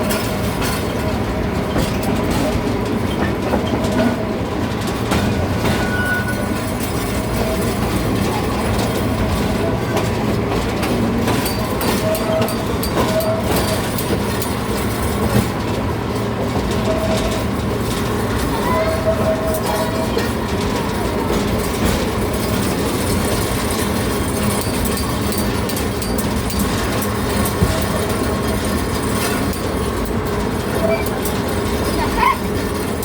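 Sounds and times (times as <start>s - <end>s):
train wheels rumbling and clattering: 0.0s - 33.0s
train wheels squealing: 5.6s - 8.8s, 11.4s - 14.1s, 16.8s - 17.4s, 18.4s - 20.3s, 30.7s - 33.0s.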